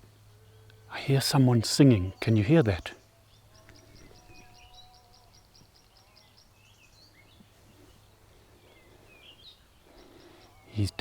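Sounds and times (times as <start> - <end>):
birds chirping: 0.0 - 11.0
distant man singing: 0.1 - 7.5.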